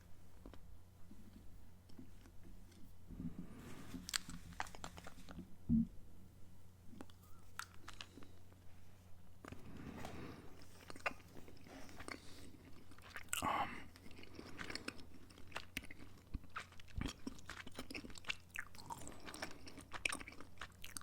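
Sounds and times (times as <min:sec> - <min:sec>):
chewing noises: 0:07.0 - 0:08.4, 0:09.4 - 0:21.0.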